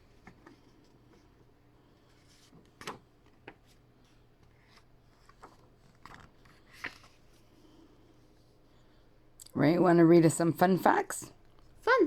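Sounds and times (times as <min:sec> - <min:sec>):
paper rustling and tapping: 0:02.4 - 0:03.8, 0:04.4 - 0:07.1.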